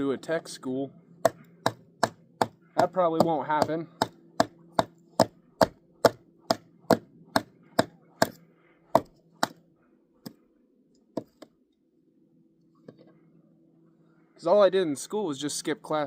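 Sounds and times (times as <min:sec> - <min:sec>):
axe chopping kindling: 0:01.2 - 0:09.6.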